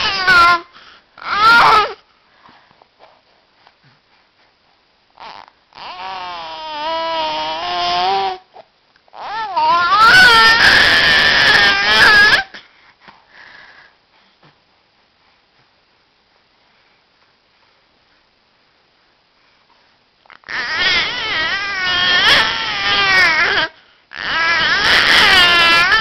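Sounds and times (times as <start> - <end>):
baby crying: 0.0 - 2.0, 5.2 - 8.4, 9.1 - 12.6, 20.4 - 26.0
faint small sounds: 12.4 - 24.4.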